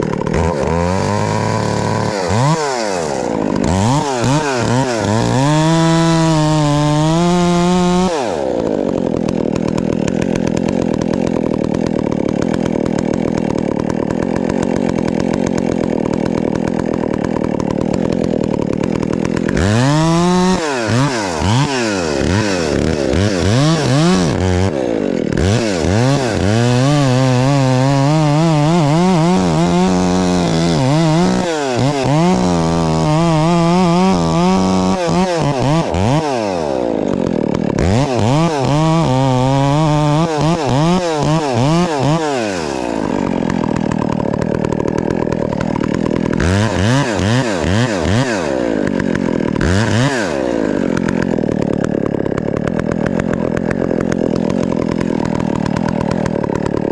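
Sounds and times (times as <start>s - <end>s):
chainsaw cutting at full throttle: 0.0s - 56.9s
chainsaw throttle blips: 0.0s - 56.9s.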